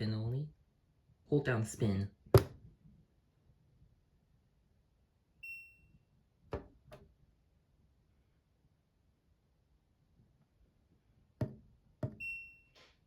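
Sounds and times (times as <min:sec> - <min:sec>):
washing machine beep: 0:05.4 - 0:06.0, 0:12.1 - 0:12.8.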